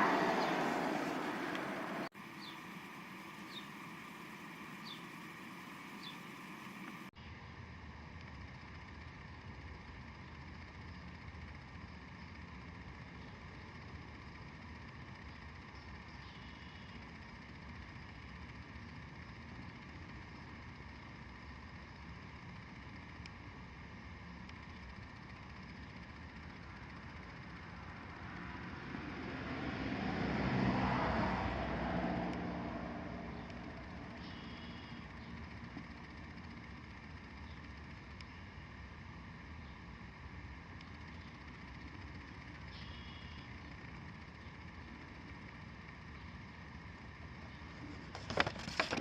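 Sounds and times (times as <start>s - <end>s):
motor vehicle passing: 0.0s - 7.1s, 27.6s - 35.0s
steady background hum: 0.0s - 49.0s.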